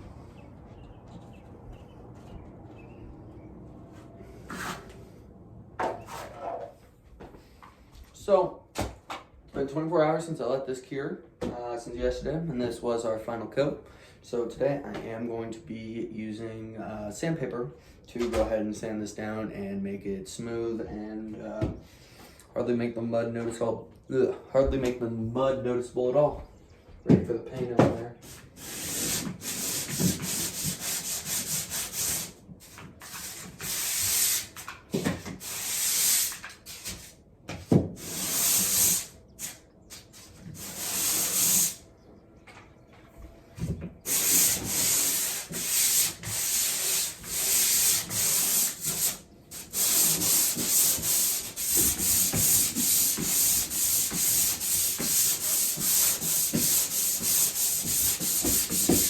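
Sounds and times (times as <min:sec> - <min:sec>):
sandpaper rubbing on drywall: 0:04.5 - 0:05.0, 0:28.2 - 0:37.2, 0:38.0 - 0:41.8, 0:44.1 - 0:59.0.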